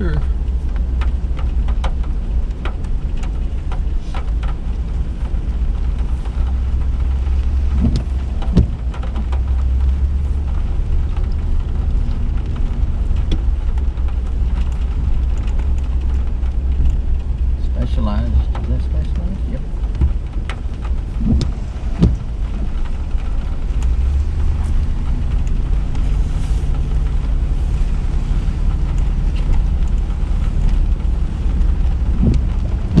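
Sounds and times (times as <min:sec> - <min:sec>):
low road rumble in car: 0:00.0 - 0:33.0
light ticks: 0:00.1 - 0:33.0
dull knocks: 0:07.6 - 0:09.5, 0:19.8 - 0:20.6, 0:21.2 - 0:22.4, 0:32.0 - 0:33.0.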